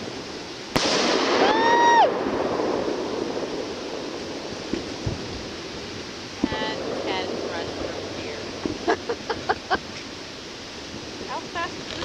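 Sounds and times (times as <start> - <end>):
rushing hiss: 0.0 - 12.0
firework bang: 0.7 - 8.9.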